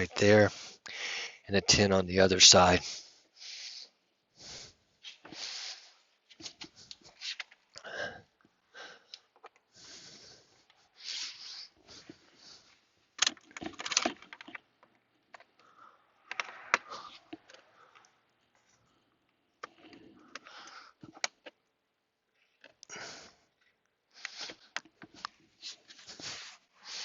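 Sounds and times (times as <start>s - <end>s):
short hissy bursts: 5.1s - 6.1s.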